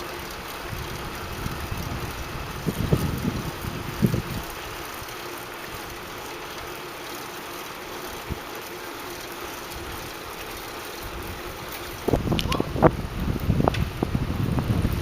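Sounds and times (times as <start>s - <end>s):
bicycle riding rushing noise: 0.0s - 15.0s
wind buffeting microphone: 0.6s - 5.0s, 11.0s - 15.0s.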